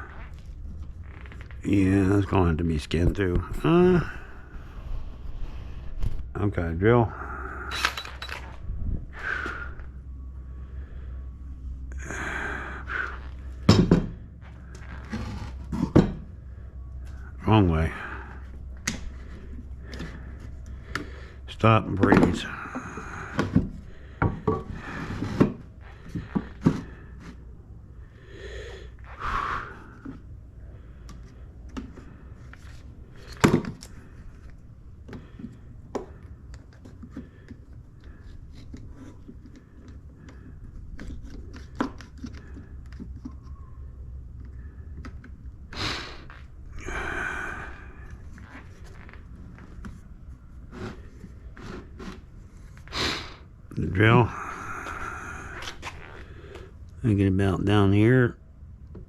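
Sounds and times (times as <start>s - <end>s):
heavy breathing: 3.4s - 6.3s, 7.0s - 13.7s, 16.4s - 21.6s, 22.4s - 36.5s, 45.7s - 49.2s, 50.6s - 57.0s.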